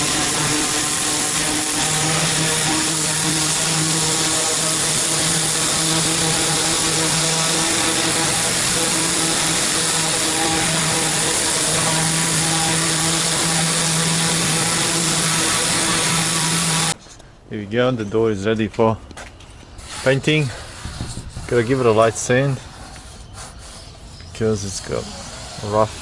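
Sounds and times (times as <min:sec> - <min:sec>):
high-pressure water jet hissing: 0:00.0 - 0:17.0, 0:19.8 - 0:26.0
petrol engine running: 0:00.0 - 0:17.0.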